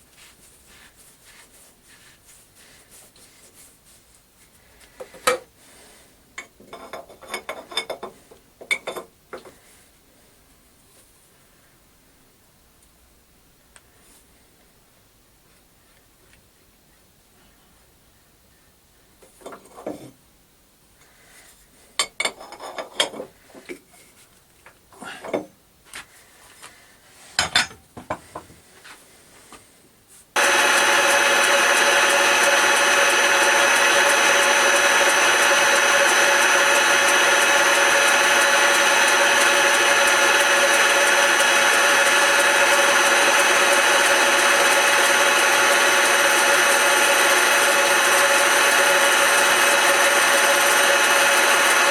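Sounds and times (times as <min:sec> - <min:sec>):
metal lathe running: 0:30.4 - 0:51.9
tool cutting wood: 0:30.4 - 0:51.9.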